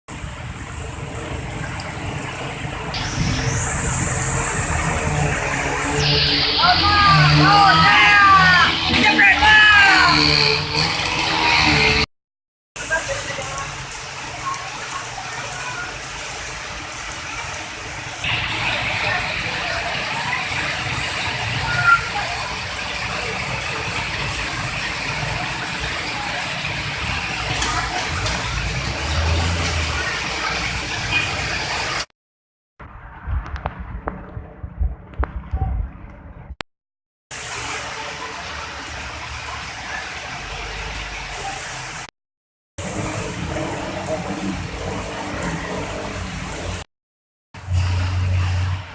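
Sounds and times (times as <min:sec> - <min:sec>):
passing vehicles rumble: 0:00.1 - 0:12.1, 0:12.8 - 0:32.1, 0:42.8 - 0:46.9, 0:47.6 - 0:48.9
rain and floodwater rushing: 0:00.1 - 0:12.1, 0:12.8 - 0:32.1, 0:37.3 - 0:42.1, 0:42.8 - 0:46.9, 0:47.6 - 0:48.9
short high tone: 0:06.0 - 0:08.8.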